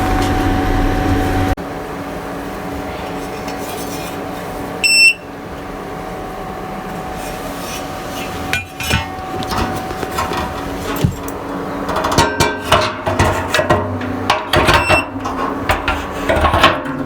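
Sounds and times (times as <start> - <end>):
steady hum: 0.0 - 17.0
sharp electronic beep: 4.8 - 5.2.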